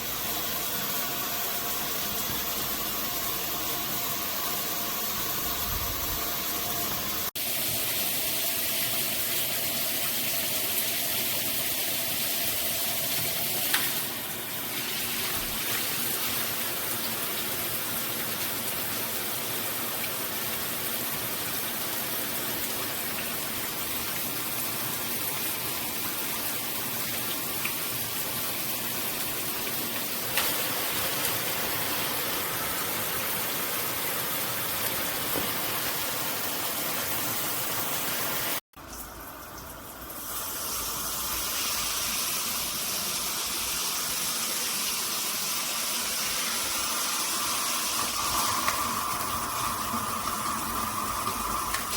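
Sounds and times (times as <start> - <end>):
shower head spraying water: 0.0 - 17.1, 30.0 - 38.6, 40.0 - 51.9.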